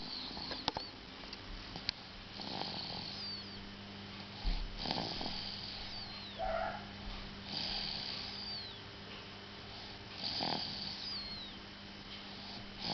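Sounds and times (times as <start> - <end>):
faint steady hum: 0.0 - 12.9
breathy snoring: 2.3 - 3.6, 4.3 - 6.8, 7.4 - 8.8, 9.7 - 11.6, 12.4 - 12.9.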